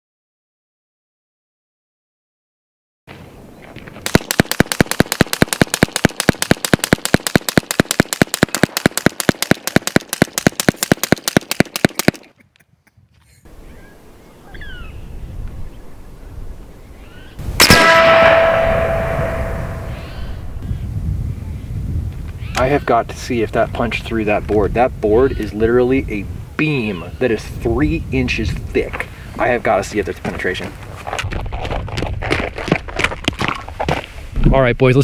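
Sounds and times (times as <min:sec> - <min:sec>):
air rifle firing automatic burst: 0:04.0 - 0:12.3
loud airgun shot with metallic ring: 0:17.6 - 0:20.5.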